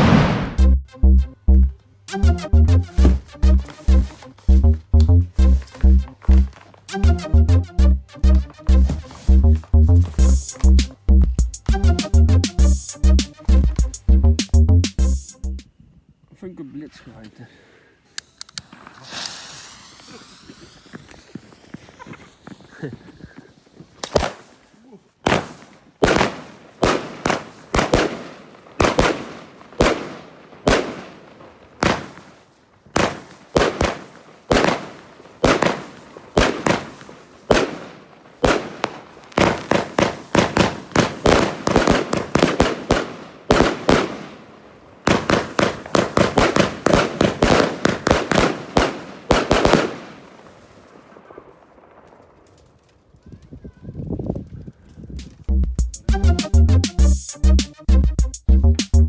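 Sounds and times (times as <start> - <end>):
fireworks firing sharp reports: 0.0 - 0.6, 2.9 - 4.6, 8.1 - 11.0, 18.7 - 53.6.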